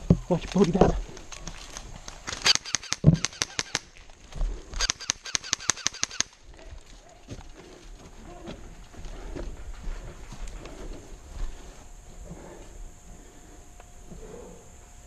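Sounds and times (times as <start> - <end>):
airsoft guns firing: 2.3 - 3.9, 4.8 - 6.5.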